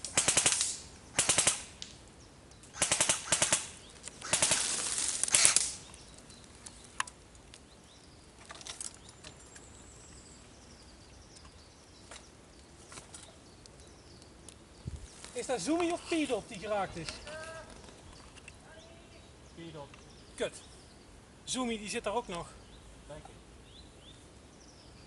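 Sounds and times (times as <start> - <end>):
airsoft gun automatic bursts: 0.0 - 1.7, 2.8 - 5.8.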